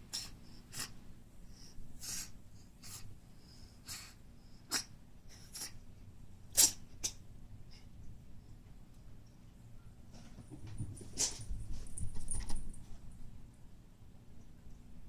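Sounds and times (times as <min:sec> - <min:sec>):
cat sneezing: 0:03.8 - 0:05.8, 0:06.5 - 0:07.2.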